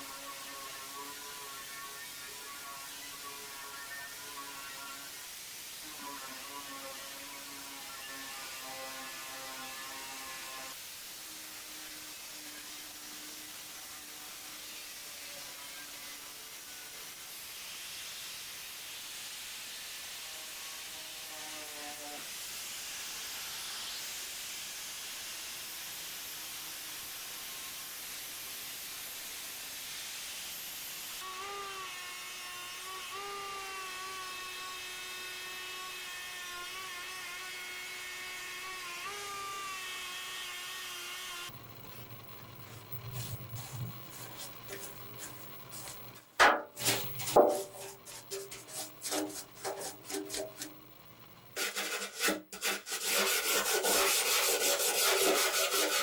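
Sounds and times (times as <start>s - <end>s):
angle grinder on metal: 31.2s - 41.5s, 46.8s - 50.8s, 51.6s - 56.0s
metal scraping: 42.7s - 50.8s, 51.6s - 56.0s.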